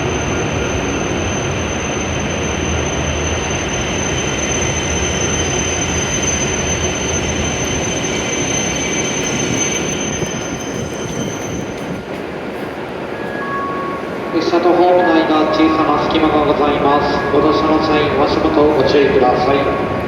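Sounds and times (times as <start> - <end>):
train rumbling and braking: 0.0 - 20.0
thin high whine: 13.1 - 20.0.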